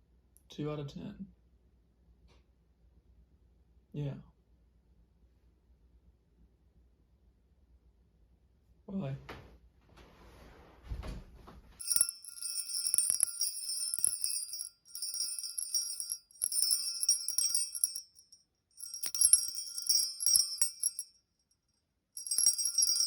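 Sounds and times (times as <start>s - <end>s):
jingle bells shaken: 11.8s - 21.1s, 22.2s - 23.0s.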